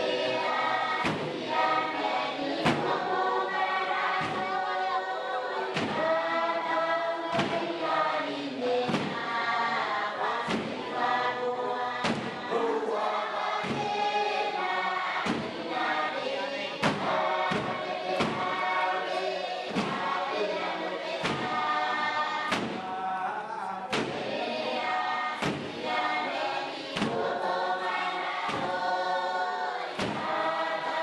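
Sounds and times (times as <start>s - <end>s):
choir singing: 0.0s - 31.0s
percussive beat: 0.4s - 4.8s, 5.6s - 6.4s, 7.3s - 8.0s, 8.8s - 9.6s, 10.4s - 11.2s, 12.0s - 14.6s, 15.2s - 16.0s, 16.8s - 19.1s, 19.7s - 20.4s, 21.2s - 22.9s, 23.9s - 24.4s, 25.3s - 26.1s, 26.9s - 27.5s, 28.4s - 29.1s, 29.9s - 31.0s.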